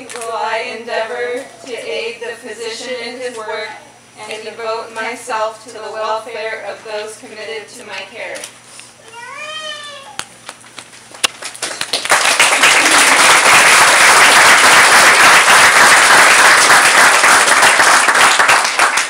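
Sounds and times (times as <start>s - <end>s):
audience applauding: 11.1s - 19.0s.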